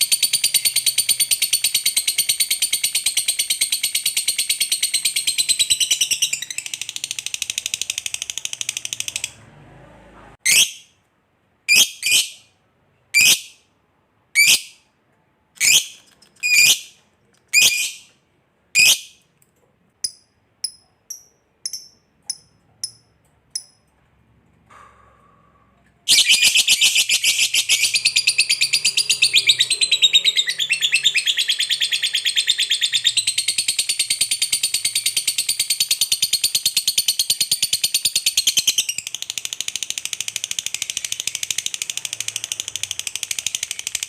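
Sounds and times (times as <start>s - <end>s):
sharp bird calls: 26.1s - 39.4s.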